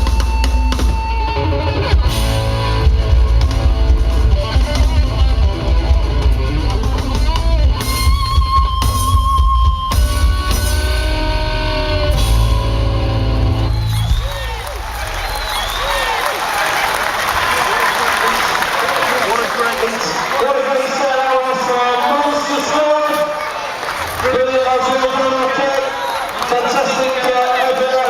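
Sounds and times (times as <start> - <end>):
rock guitar wavering notes: 0.0 - 14.6
heavy bass: 0.0 - 16.2
drums: 0.0 - 19.5.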